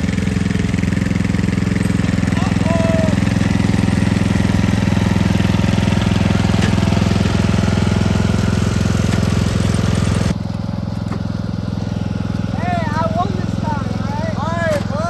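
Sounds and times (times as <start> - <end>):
lawn mower engine running: 0.0 - 15.0.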